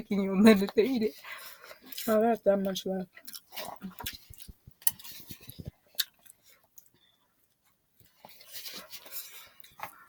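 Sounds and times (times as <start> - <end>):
chewing with wet clicks: 2.6 - 7.0.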